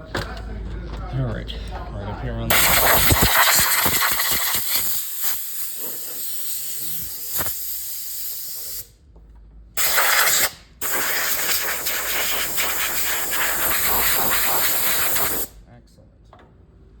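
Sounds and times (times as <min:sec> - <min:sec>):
aerosol can spraying: 0:02.5 - 0:08.8, 0:09.8 - 0:15.5.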